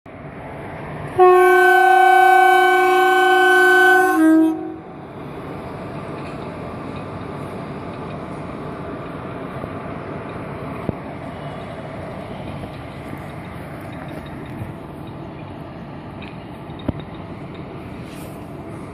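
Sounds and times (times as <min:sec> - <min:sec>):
moving train noise: 0:00.1 - 0:18.9
locomotive air horn blast: 0:01.2 - 0:05.0.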